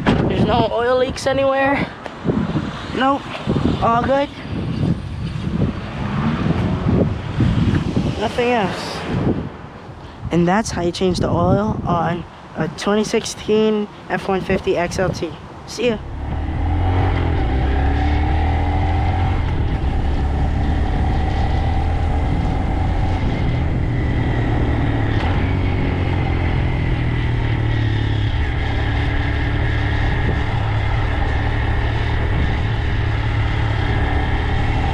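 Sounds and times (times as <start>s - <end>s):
vehicle engine running: 16.0s - 34.9s.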